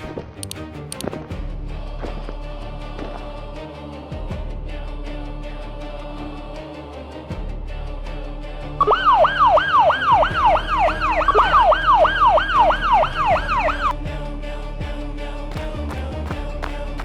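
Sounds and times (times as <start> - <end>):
background music: 0.0 - 17.0
emergency siren yelping: 8.8 - 13.9.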